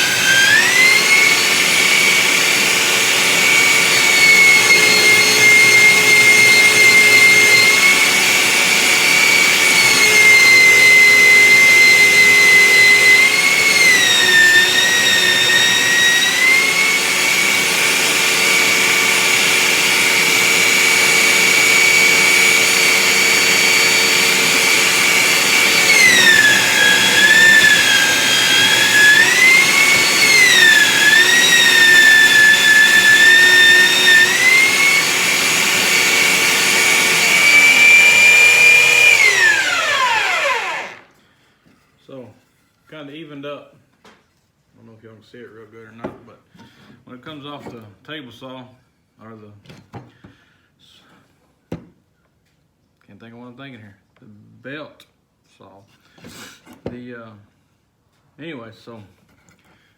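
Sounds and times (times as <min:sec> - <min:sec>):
belt sander whining: 0:00.0 - 0:41.1.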